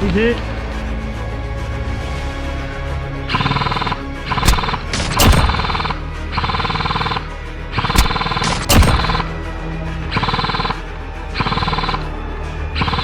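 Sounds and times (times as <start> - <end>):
background music with gritty pulse: 0.0 - 13.0
sharp cracks: 3.3 - 9.4.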